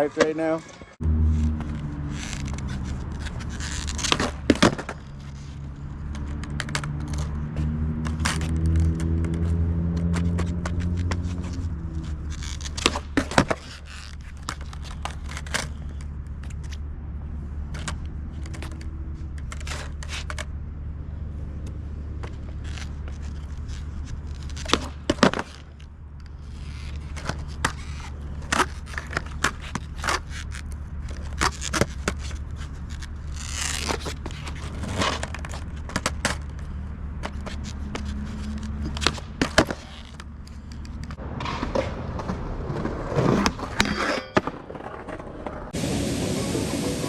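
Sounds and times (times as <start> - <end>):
skateboards rolling on concrete: 0.0 - 47.0
skateboard pops and clacks: 1.6 - 5.4, 6.1 - 7.4, 8.0 - 11.6, 12.4 - 16.8, 22.2 - 45.8.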